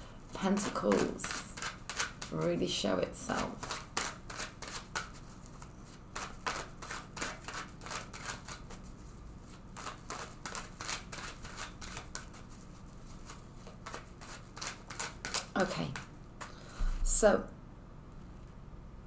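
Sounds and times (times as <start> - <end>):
cards being shuffled: 0.6 - 2.4, 3.4 - 16.6.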